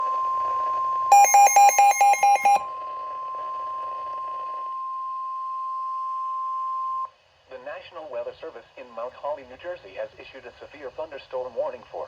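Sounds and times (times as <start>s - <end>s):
quick harsh beeps: 1.1s - 2.6s
steady high warning tone: 1.1s - 2.6s.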